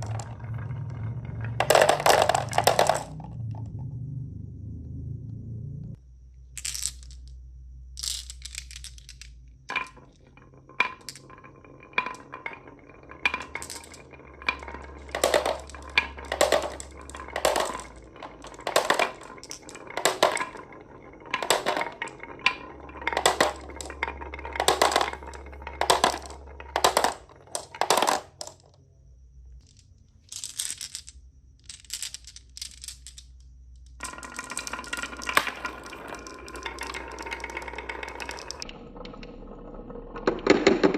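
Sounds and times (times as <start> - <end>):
marbles clacking down wooden run: 0.0 - 3.6, 6.6 - 7.3, 8.0 - 28.7, 29.6 - 40.9.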